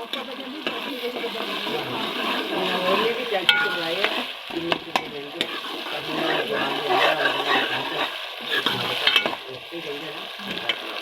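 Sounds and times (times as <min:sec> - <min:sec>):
food sizzling in a pan: 0:00.0 - 0:11.0
utensil clicking against pan: 0:03.5 - 0:05.6, 0:08.5 - 0:09.4.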